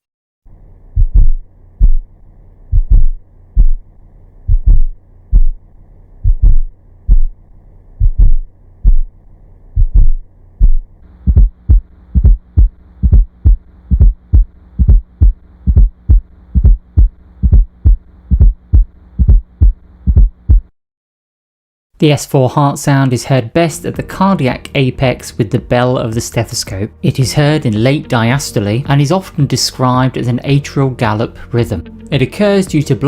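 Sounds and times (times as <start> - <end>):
deep heartbeat thumps: 0.9 - 20.7.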